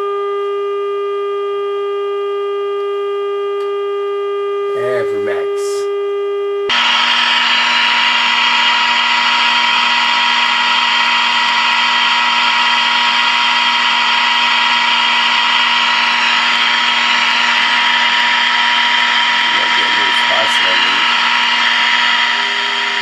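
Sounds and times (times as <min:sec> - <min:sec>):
radio buzzing tone: 0:04.7 - 0:05.8, 0:06.7 - 0:23.0
radio speaker hiss: 0:04.7 - 0:05.8, 0:19.4 - 0:21.7.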